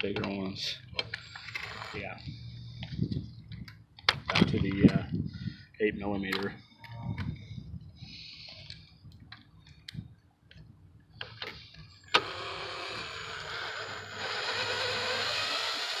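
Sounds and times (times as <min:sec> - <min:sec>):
cordless drill running: 0:12.1 - 0:16.0.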